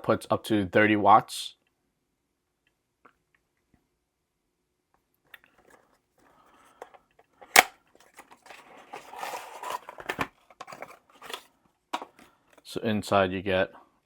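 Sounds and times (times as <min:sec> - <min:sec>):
packaging rustling and scraping: 0:06.7 - 0:12.3
cardboard box snapping open: 0:07.5 - 0:07.7.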